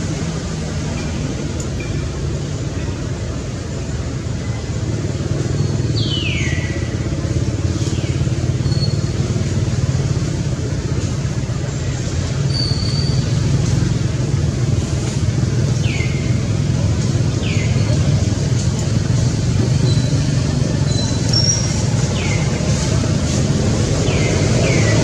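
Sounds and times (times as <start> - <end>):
low rumble of traffic: 0.0 - 25.0.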